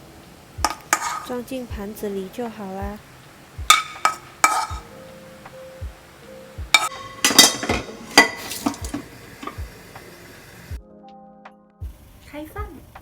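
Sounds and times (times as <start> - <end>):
background music with steady beat: 0.0 - 13.0
metal spatula scraping a pan: 0.6 - 1.4, 3.7 - 4.9, 6.7 - 9.6.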